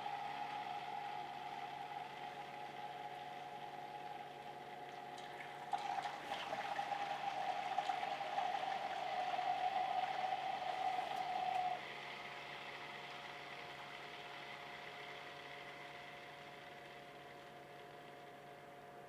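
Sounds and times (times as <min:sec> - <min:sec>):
coolant gurgling and splashing: 0:00.0 - 0:11.8
water-cooling pump humming: 0:00.0 - 0:19.0.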